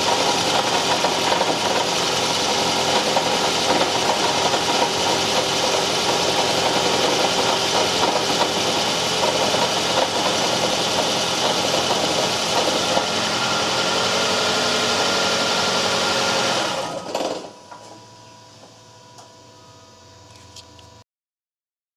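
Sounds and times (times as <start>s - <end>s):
car engine running: 0.0s - 17.6s.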